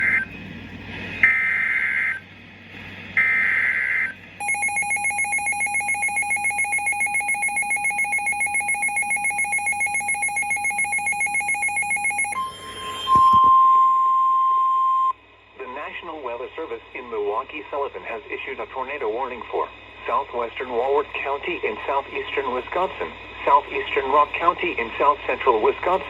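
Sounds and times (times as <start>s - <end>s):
screechy digital data bursts: 3.2s - 13.0s
steady alert tone: 4.4s - 13.5s
two-tone attention signal: 4.4s - 15.2s.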